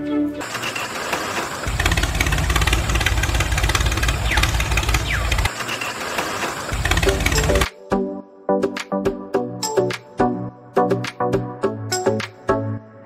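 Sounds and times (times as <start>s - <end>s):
small motor pulsing: 0.4s - 7.6s.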